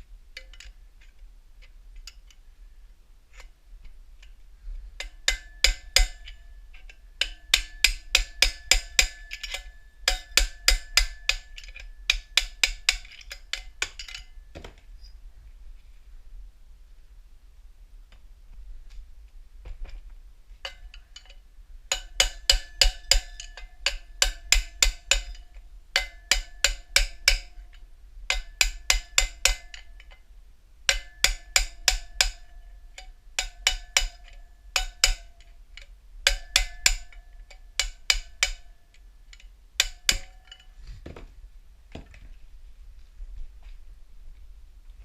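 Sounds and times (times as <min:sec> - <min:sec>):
hammer striking metal: 0:05.0 - 0:06.4, 0:07.2 - 0:14.4, 0:21.9 - 0:25.4, 0:26.0 - 0:27.6, 0:28.3 - 0:29.9, 0:30.9 - 0:32.6, 0:33.4 - 0:35.4, 0:36.3 - 0:38.6, 0:39.8 - 0:40.6.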